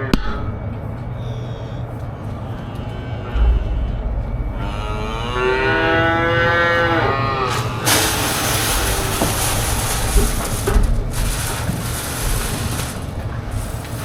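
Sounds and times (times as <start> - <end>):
low machine hum: 0.0 - 14.0
calf bawling: 1.2 - 7.9.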